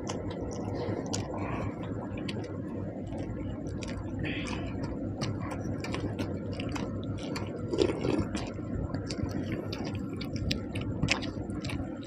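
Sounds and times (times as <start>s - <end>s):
steady low hum: 0.0s - 12.0s
wet eating squishes and chewing: 0.0s - 12.0s.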